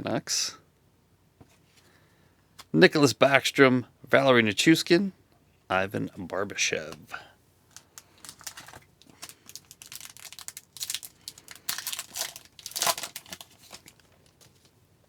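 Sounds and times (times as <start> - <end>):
wrapper torn and crinkled: 8.0 - 14.7.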